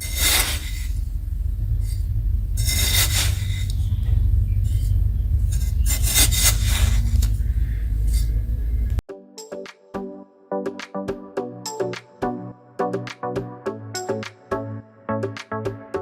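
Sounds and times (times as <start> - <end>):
rough rubbing strokes: 0.0 - 9.0
steady low rumble: 0.0 - 9.0.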